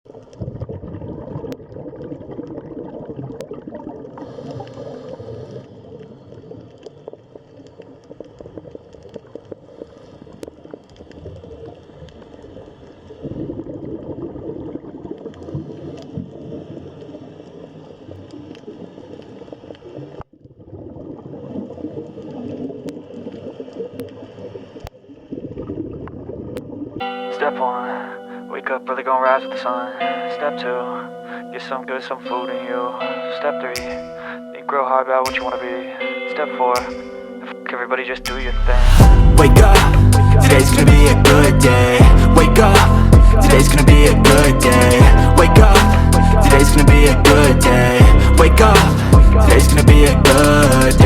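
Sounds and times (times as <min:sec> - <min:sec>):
water bubbling and gurgling: 0:00.1 - 0:27.1.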